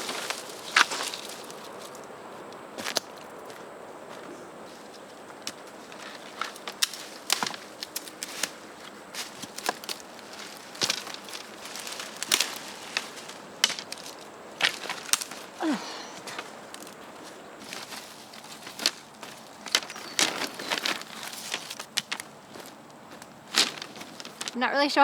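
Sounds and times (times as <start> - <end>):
wooden sticks knocking and snapping: 5.4 - 8.6, 9.2 - 17.0, 17.6 - 24.6.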